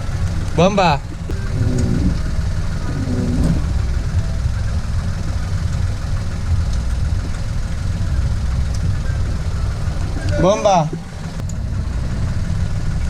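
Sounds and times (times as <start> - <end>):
engine idling: 0.0 - 13.0.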